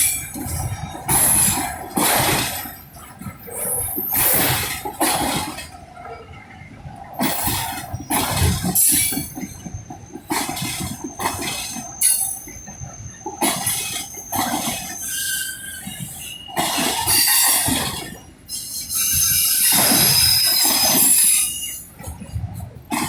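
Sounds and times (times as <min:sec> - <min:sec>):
train wheels rumbling on rails: 0:00.0 - 0:23.0
high-pitched wheel squeals: 0:07.2 - 0:22.1.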